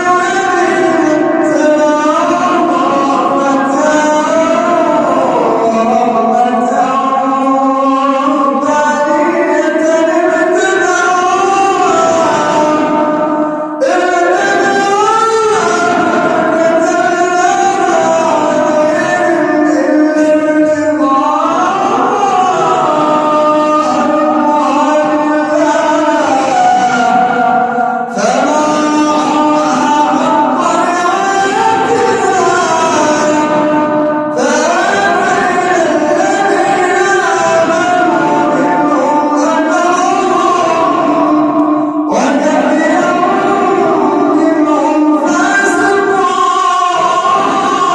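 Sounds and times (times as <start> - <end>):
man chanting melodically: 0.0 - 47.9.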